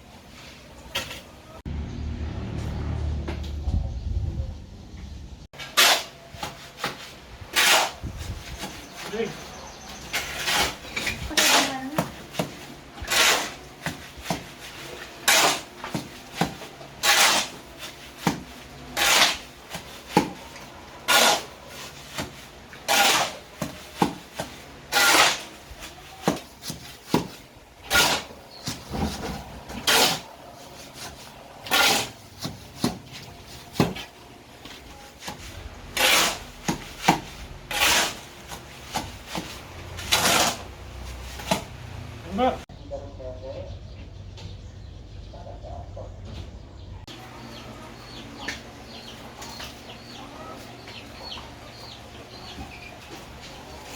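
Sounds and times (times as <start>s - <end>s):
hand tool rasping: 35.3s - 38.6s.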